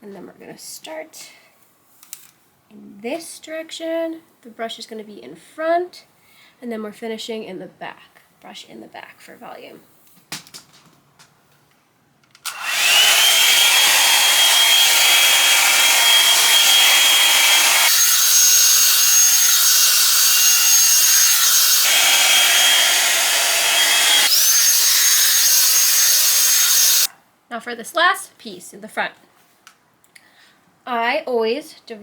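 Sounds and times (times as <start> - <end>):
blow-dryer brush running: 12.5 - 27.1.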